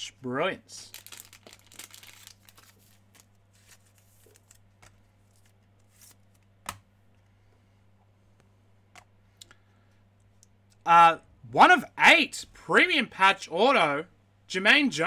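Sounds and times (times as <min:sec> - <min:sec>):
low steady hum: 0:00.0 - 0:15.0
trading cards rustling and clicking: 0:01.0 - 0:06.8.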